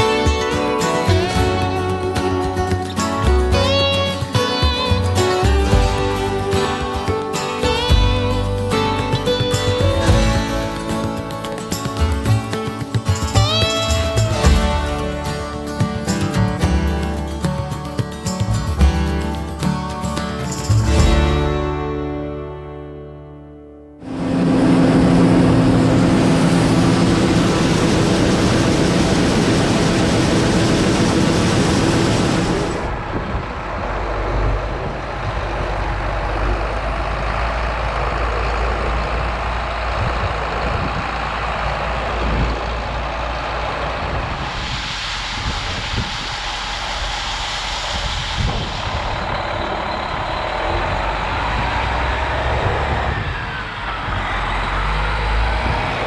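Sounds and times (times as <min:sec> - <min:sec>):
diesel engine rumbling: 0:00.0 - 0:23.4, 0:24.0 - 0:56.0
strong hiss: 0:42.7 - 0:52.2.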